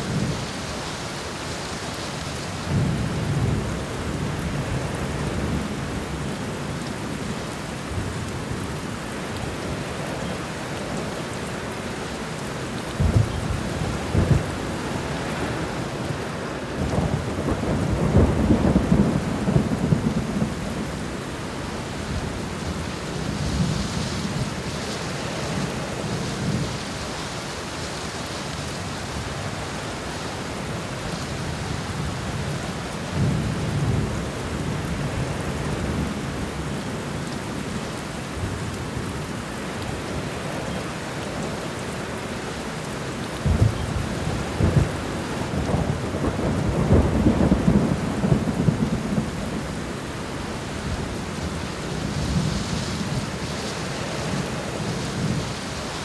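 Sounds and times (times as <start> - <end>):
steady rain: 0.0 - 56.0
low rolling thunder: 2.6 - 6.6, 12.9 - 26.9, 31.3 - 36.8, 43.4 - 56.0.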